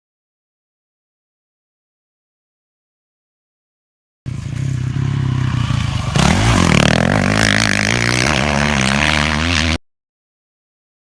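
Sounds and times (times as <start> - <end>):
motorcycle engine revving: 4.3 - 9.8.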